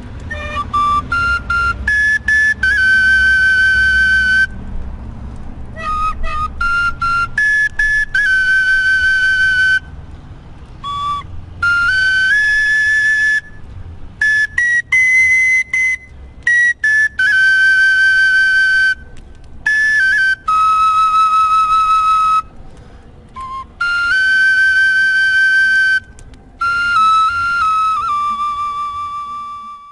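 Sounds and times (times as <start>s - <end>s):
solo flute melody: 0.0s - 4.8s, 5.6s - 10.0s, 10.6s - 29.9s.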